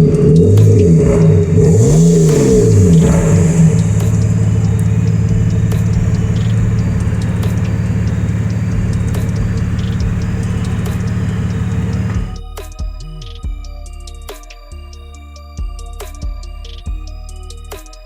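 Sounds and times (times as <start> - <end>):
car engine running: 0.0 - 13.6.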